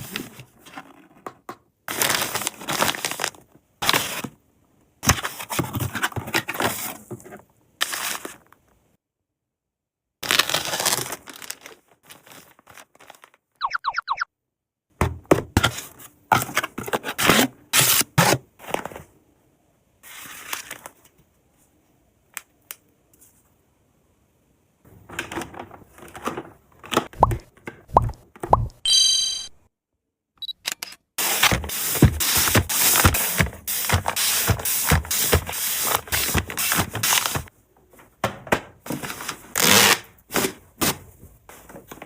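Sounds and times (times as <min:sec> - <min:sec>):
plastic packaging crinkling and tearing: 0:01.9 - 0:04.3, 0:10.2 - 0:13.5.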